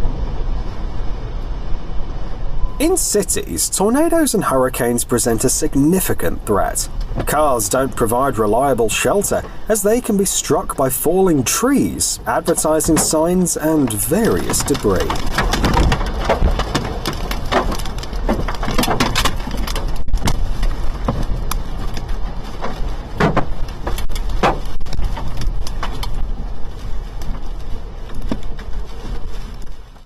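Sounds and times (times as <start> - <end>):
storm wind blowing hard: 0.0 - 10.7, 11.6 - 30.0
debris knocking and rattling: 13.9 - 26.2.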